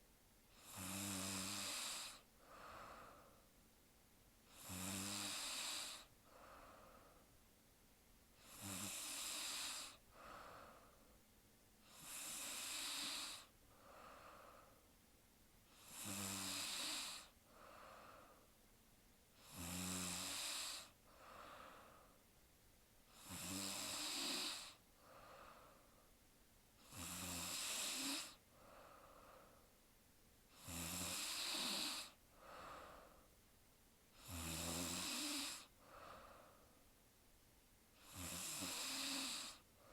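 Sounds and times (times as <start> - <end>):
woman snoring: 0.5 - 3.4, 4.5 - 7.1, 8.4 - 10.9, 11.8 - 14.7, 15.7 - 18.4, 19.4 - 22.1, 23.1 - 25.7, 26.8 - 29.4, 30.5 - 33.1, 34.2 - 36.4, 38.0 - 39.7.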